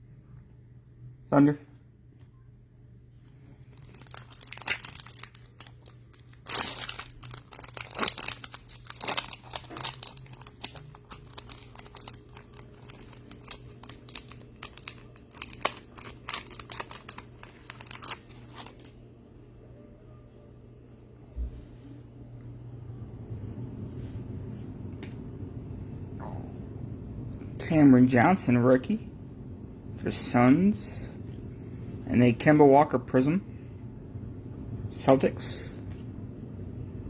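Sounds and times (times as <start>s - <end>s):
low hum: 0.0s - 32.1s
plastic wrappers crinkling and tearing: 3.5s - 19.0s.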